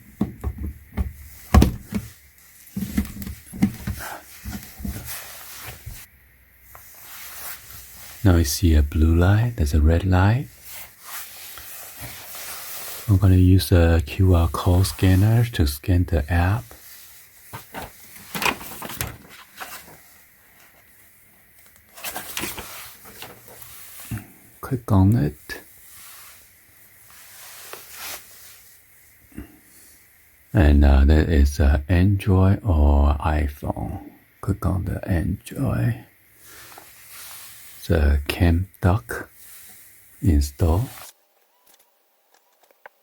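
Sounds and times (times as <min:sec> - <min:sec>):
plastic charger clicks and knocks: 0:00.2 - 0:02.1.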